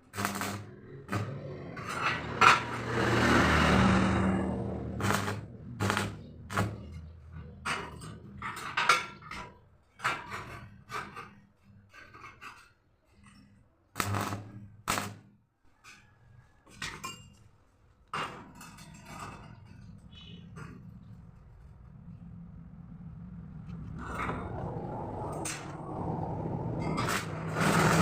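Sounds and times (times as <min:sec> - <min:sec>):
metal shutter pieces clanking: 0:00.3 - 0:03.2.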